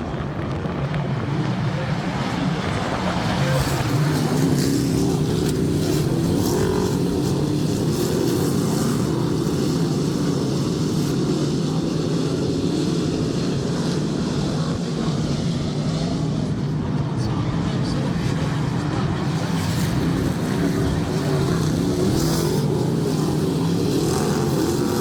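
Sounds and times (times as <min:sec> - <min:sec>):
race car engines droning: 0:00.0 - 0:25.0.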